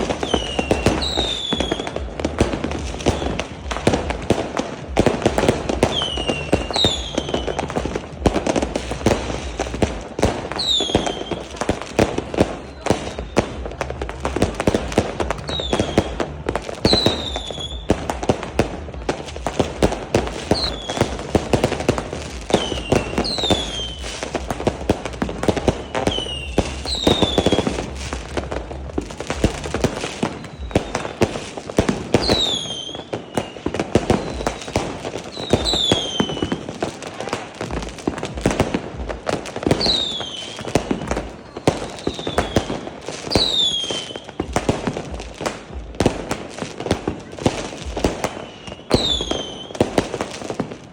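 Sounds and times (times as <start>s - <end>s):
fireworks crackling and popping: 0.0s - 50.9s
fireworks whistling: 0.0s - 50.9s.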